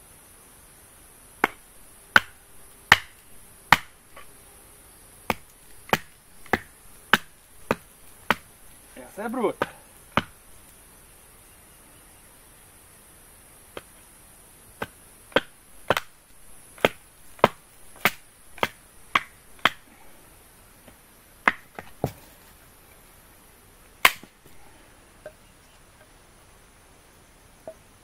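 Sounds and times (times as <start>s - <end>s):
high insect hum: 0.0s - 28.0s
axe chopping firewood: 1.4s - 4.3s, 5.2s - 8.6s, 9.5s - 10.4s, 13.7s - 14.0s, 14.8s - 20.0s, 20.8s - 22.5s, 24.0s - 24.5s.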